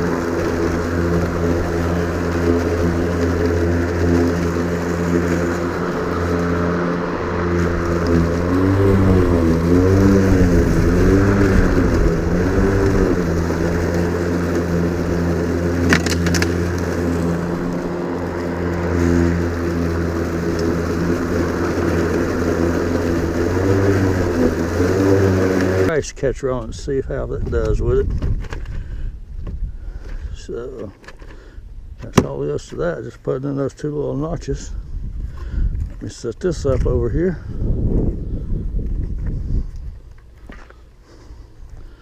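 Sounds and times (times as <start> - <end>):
electric lawn mower humming: 0.0 - 26.0.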